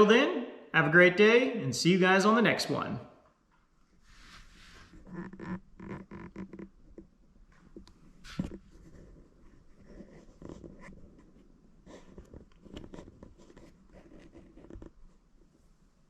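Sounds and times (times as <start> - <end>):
faint rustling: 3.5 - 15.8.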